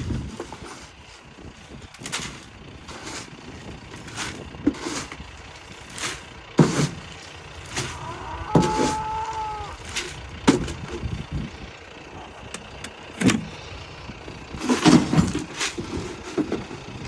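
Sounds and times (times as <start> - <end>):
truck engine idling: 0.0 - 17.0.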